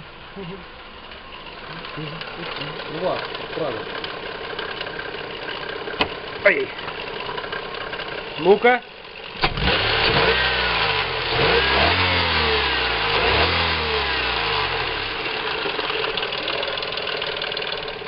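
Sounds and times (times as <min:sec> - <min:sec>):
car engine revving and idling: 0:00.0 - 0:18.0
engine knocking: 0:01.2 - 0:09.4, 0:15.1 - 0:18.0.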